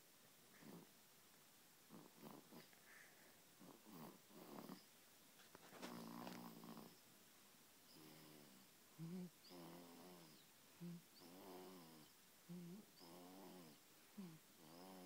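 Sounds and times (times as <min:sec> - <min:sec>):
baby snoring: 0:01.9 - 0:02.7, 0:03.6 - 0:04.9, 0:05.8 - 0:07.0, 0:07.9 - 0:15.0
soft snuffly breaths: 0:01.9 - 0:07.0.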